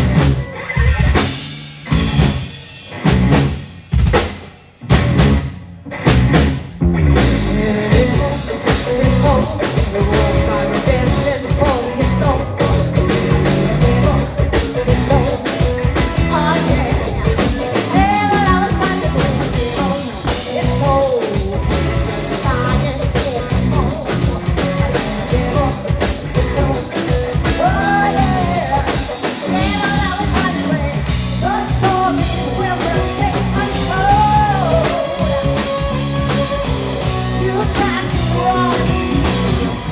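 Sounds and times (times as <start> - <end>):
drum hits: 0.0 - 8.1
rock band playing: 0.0 - 39.9
person singing: 7.3 - 39.9.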